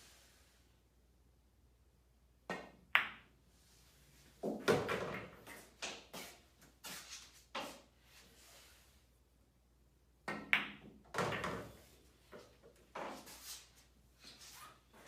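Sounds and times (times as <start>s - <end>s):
pool balls clacking: 4.4s - 6.1s, 10.2s - 13.2s.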